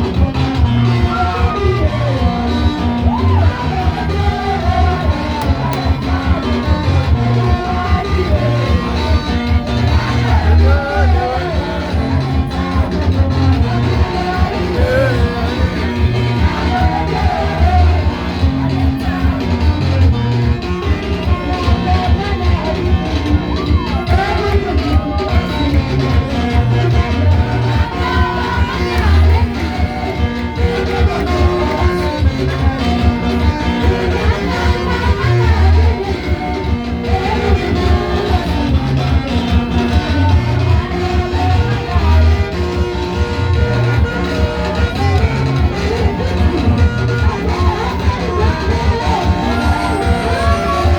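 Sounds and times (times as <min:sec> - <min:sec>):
band with heavy bass line: 0:00.0 - 0:50.9
guitar: 0:00.0 - 0:50.9
people singing gospel: 0:00.0 - 0:50.9
upbeat praise music: 0:00.0 - 0:50.9
steady bass beat: 0:01.8 - 0:20.5.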